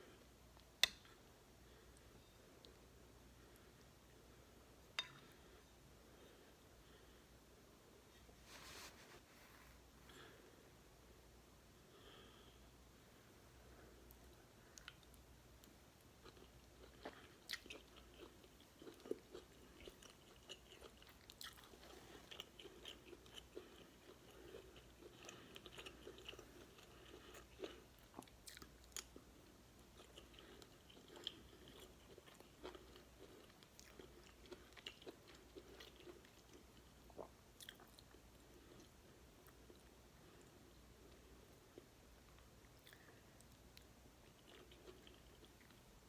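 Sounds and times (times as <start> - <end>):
close chewing and eating: 14.0 - 46.0.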